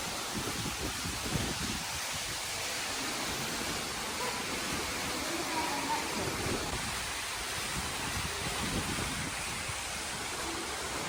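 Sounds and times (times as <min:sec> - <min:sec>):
low wind rumbling on microphone: 0:00.0 - 0:03.5, 0:06.0 - 0:11.0.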